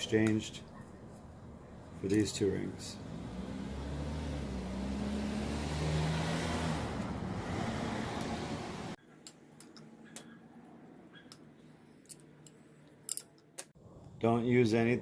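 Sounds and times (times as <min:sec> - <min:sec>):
motor vehicle running: 0:02.7 - 0:09.0.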